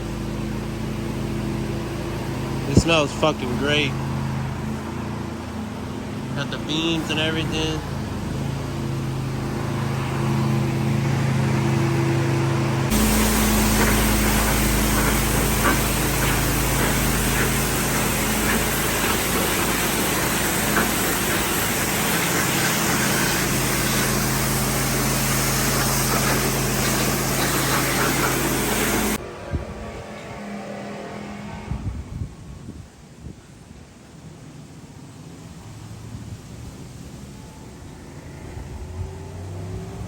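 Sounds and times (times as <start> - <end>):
pressure washer spraying: 12.9 - 29.2.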